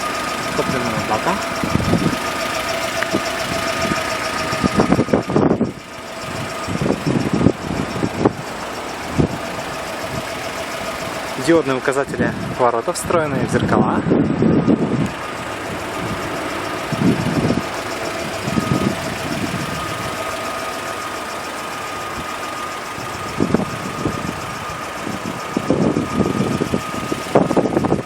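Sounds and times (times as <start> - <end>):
van engine idling: 0.0 - 28.0.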